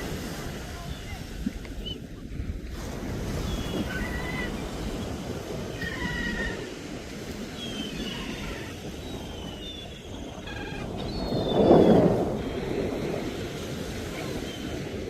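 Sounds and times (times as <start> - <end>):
surf rushing: 0.0 - 15.0
wind: 0.0 - 15.0
gulls calling: 3.2 - 13.1.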